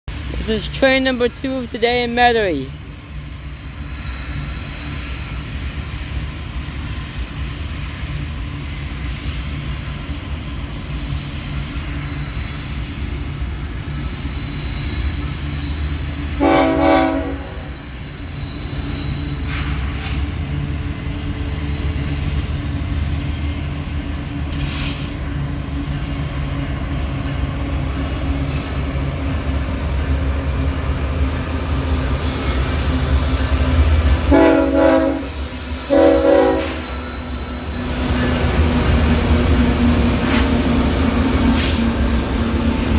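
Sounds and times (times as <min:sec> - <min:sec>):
freight train rumbling past: 0:00.1 - 0:42.9
train horn blast: 0:16.4 - 0:17.8, 0:34.3 - 0:36.9.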